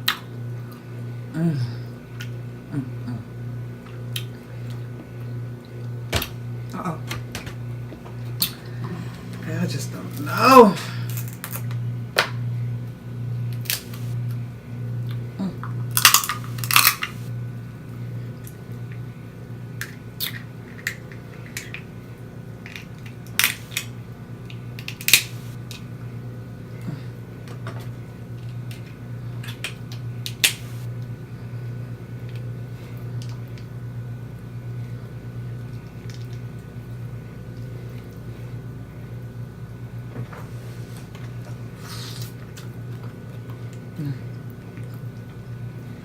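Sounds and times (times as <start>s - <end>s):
steady low hum: 0.0s - 46.0s
crab legs cracking: 10.5s - 12.3s, 13.6s - 14.2s, 15.9s - 17.3s, 22.6s - 23.9s, 24.8s - 25.8s, 28.7s - 30.9s.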